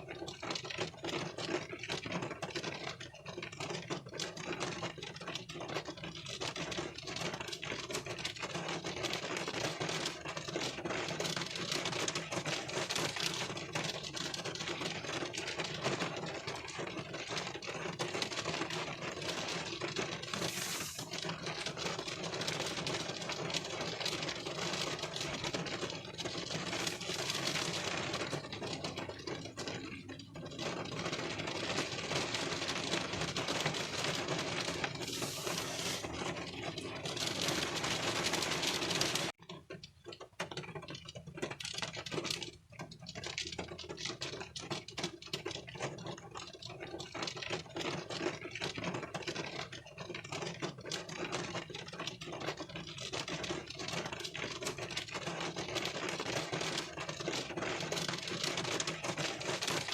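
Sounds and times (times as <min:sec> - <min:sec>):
rain on car windshield: 0:00.0 - 0:59.9.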